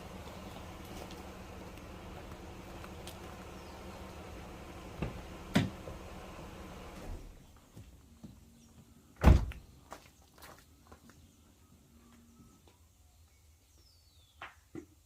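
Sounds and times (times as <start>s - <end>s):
door shutting thud: 9.2s - 9.6s.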